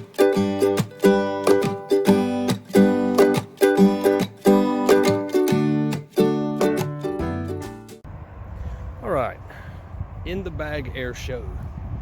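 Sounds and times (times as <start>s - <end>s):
strummed ukulele or guitar chords: 0.0s - 8.0s.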